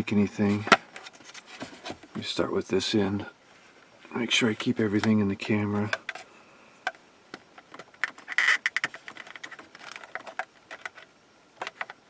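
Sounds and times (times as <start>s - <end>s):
small plastic clicks: 7.6s - 12.0s
screwdriver scraping plastic: 8.0s - 10.4s.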